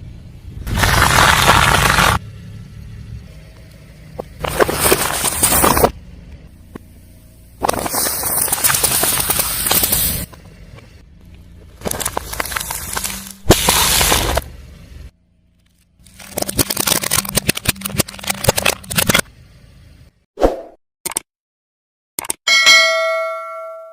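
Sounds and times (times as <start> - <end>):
tyre crushing crunchy objects: 0.7 - 2.2, 4.3 - 6.0, 11.7 - 14.5.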